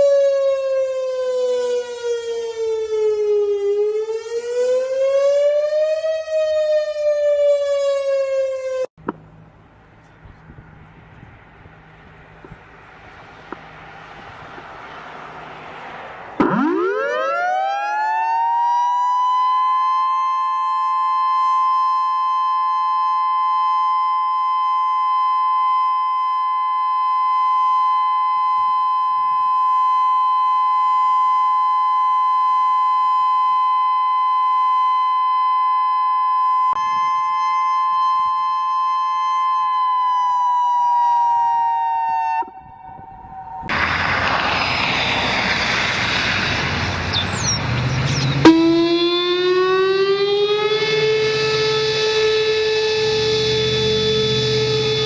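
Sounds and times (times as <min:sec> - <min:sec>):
warning siren winding: 0:00.0 - 0:08.9, 0:48.4 - 0:55.0.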